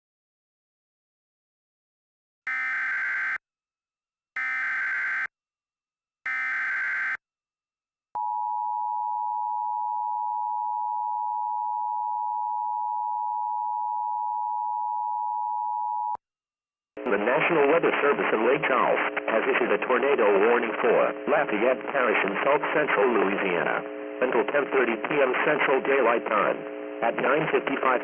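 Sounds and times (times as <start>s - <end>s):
steady attention tone: 2.5s - 3.4s, 4.4s - 5.3s, 6.3s - 7.2s.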